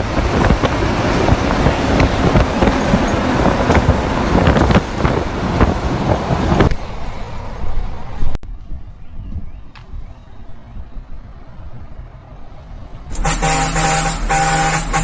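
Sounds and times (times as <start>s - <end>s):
heavy truck road rumble: 0.0s - 15.0s
traffic: 0.0s - 15.0s.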